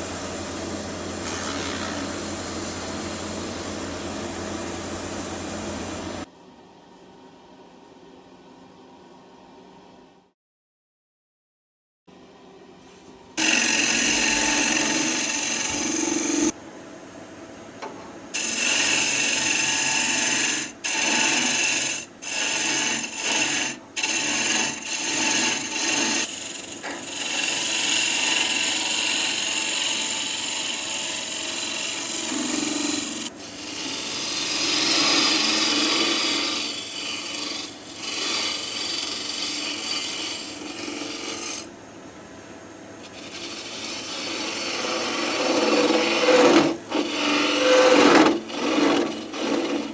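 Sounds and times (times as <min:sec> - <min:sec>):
lathe tool scraping wood: 0:00.0 - 0:06.3, 0:13.4 - 0:16.6, 0:18.3 - 0:41.7, 0:43.0 - 0:49.9.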